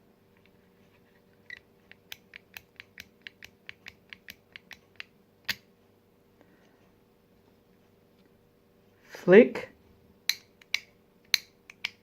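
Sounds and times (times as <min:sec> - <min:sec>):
fidget toy plastic clicks: 0:10.3 - 0:12.0.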